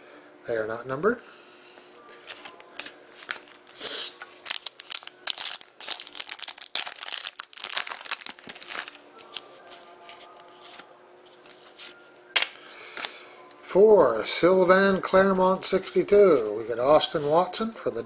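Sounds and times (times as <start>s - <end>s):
packaging crinkling and rustling: 2.3s - 10.8s.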